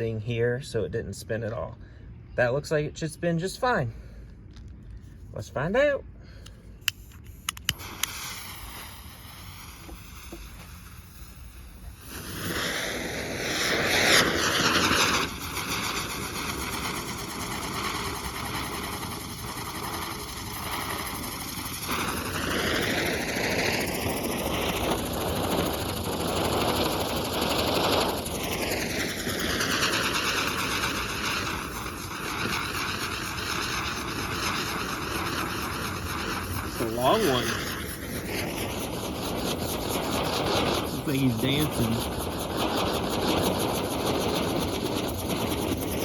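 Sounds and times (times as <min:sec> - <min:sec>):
spinner firework hissing: 0:05.1 - 0:46.0
sharp clicks: 0:06.4 - 0:08.2.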